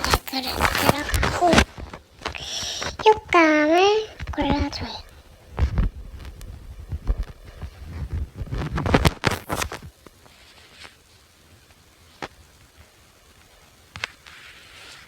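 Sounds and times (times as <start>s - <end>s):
handling taps and rustling: 0.0s - 10.0s.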